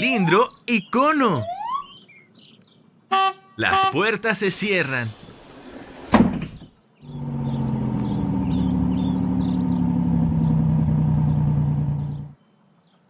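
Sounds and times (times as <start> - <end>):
cartoon bus engine hum: 5.1 - 12.4.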